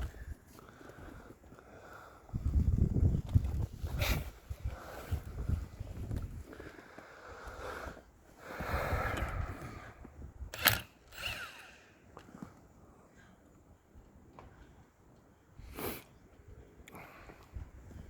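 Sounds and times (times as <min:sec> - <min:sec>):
power tool running: 0:10.5 - 0:12.1.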